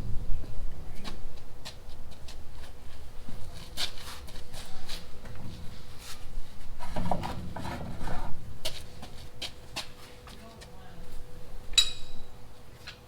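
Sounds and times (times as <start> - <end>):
steel pieces and tools clinking: 11.8 - 12.3.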